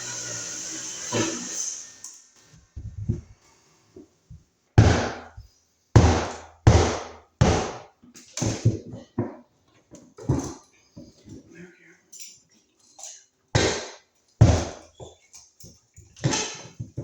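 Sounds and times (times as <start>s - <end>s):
knocking thuds: 2.8s - 3.4s.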